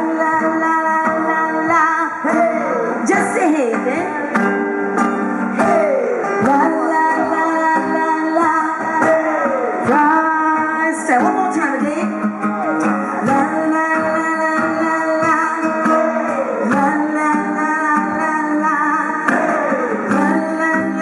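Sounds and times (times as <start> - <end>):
live band playing pop song: 0.0 - 21.0
person singing: 0.0 - 21.0.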